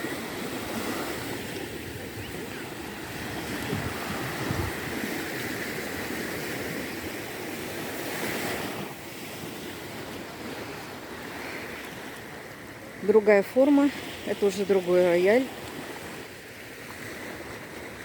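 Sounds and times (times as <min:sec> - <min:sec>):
wind on microphone: 0:00.0 - 0:10.8
small waves washing onto sand: 0:00.0 - 0:18.0.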